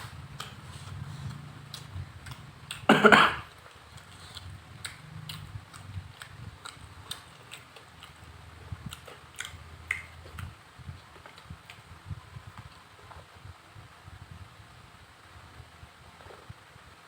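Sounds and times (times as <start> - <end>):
low steady rumble: 0.0 - 17.0
chewing clicks and smacks: 0.4 - 0.6, 1.3 - 2.9, 3.5 - 10.5.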